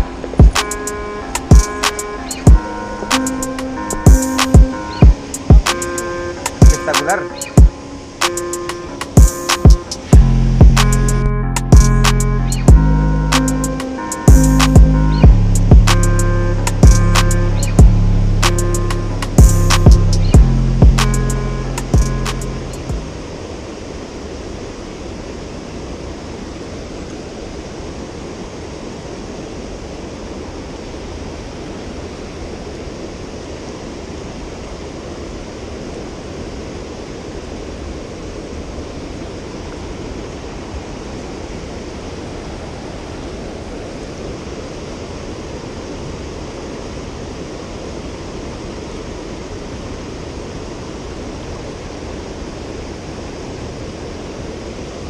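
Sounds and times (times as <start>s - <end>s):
river rushing: 0.0s - 55.0s.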